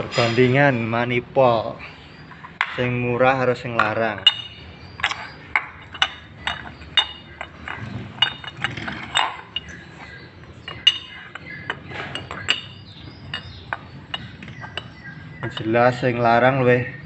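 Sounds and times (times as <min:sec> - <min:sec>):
metal parts clinking: 0:00.0 - 0:00.6, 0:04.2 - 0:09.8.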